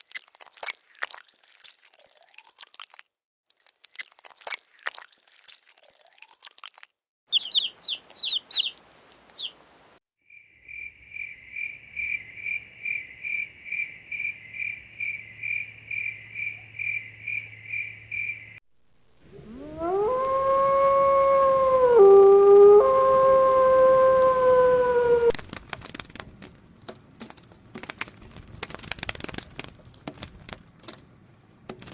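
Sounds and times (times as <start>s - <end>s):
high animal chirps: 7.3s - 9.6s
howl-like animal call: 19.3s - 25.3s
animal clicking: 25.4s - 26.5s, 27.3s - 31.0s.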